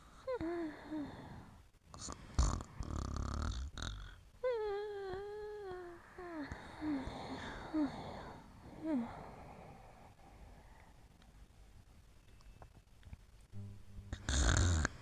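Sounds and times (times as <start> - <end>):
dog snoring: 1.0 - 4.2, 14.1 - 15.0.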